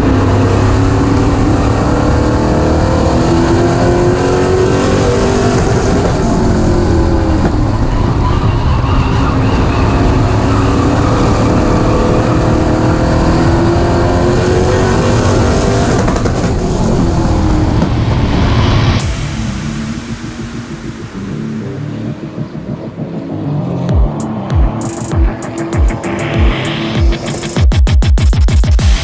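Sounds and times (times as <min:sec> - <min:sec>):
race car engine revving: 0:00.0 - 0:29.0.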